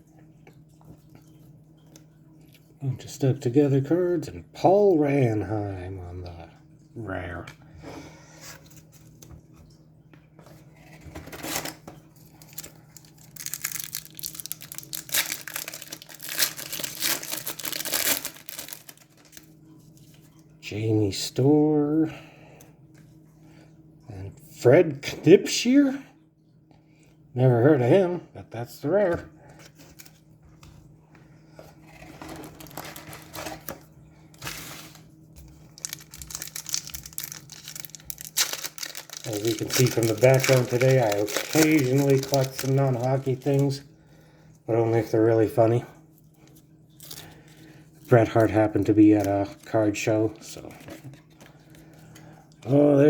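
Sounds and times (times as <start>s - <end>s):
wrapper crinkling and tearing: 10.8s - 19.6s, 31.9s - 33.8s, 34.4s - 43.8s, 46.9s - 47.4s.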